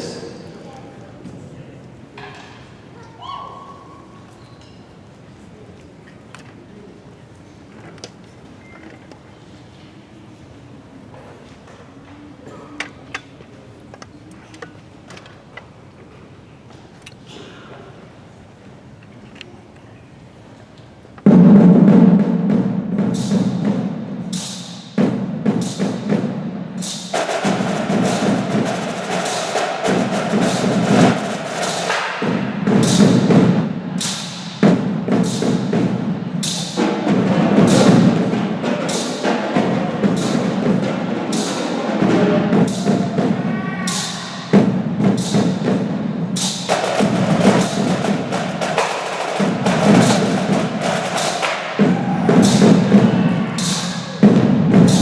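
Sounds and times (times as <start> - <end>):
percussion ensemble drumming: 21.2 - 55.0.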